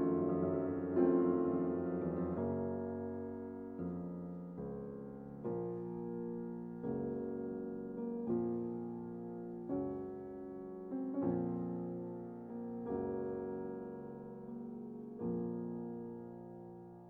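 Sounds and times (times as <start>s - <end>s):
soft piano chords: 0.0s - 17.0s.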